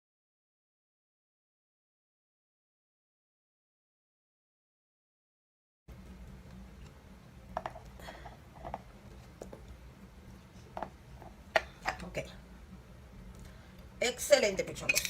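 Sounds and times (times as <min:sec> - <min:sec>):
steady low hum: 0:05.9 - 0:15.0.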